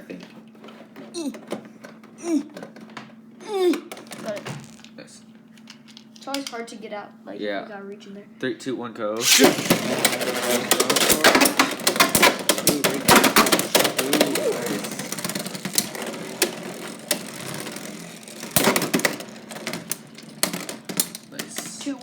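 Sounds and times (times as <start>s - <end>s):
spinning tops clashing: 9.2s - 21.8s.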